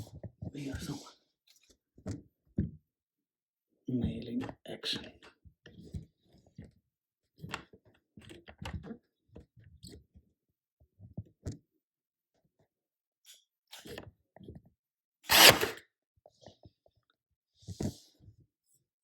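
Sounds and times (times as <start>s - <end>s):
nail gun clacks: 15.3s - 15.8s.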